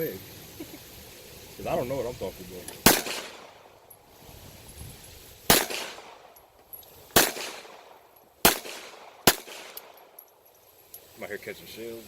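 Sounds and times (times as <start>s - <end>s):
gunshots with echo: 2.9s - 3.6s, 5.5s - 6.2s, 7.2s - 9.9s.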